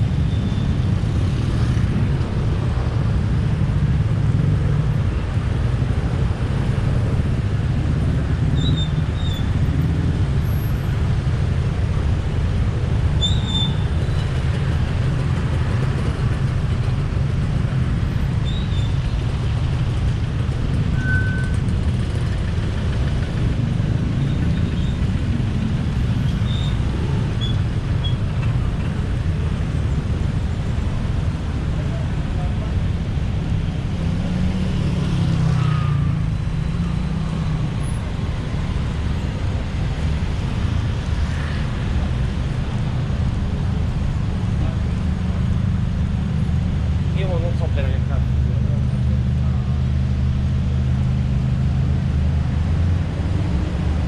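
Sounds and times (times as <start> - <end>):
busy road traffic rumble: 0.0 - 54.0
brief high squeaks: 21.0 - 21.7.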